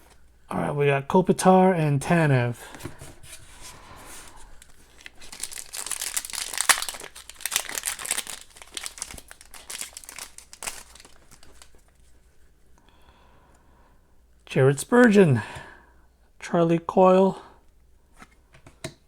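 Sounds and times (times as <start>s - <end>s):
wrapper tearing and crinkling: 4.4s - 12.0s.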